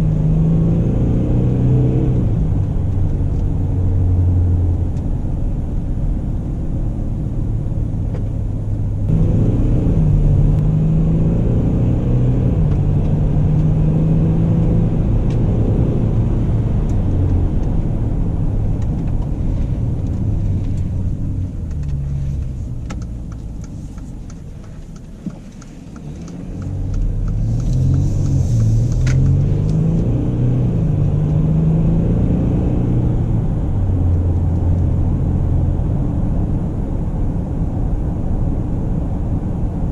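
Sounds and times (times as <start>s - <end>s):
car engine accelerating: 0.0s - 39.9s
road noise: 0.0s - 39.9s
regular ticking: 21.6s - 29.4s.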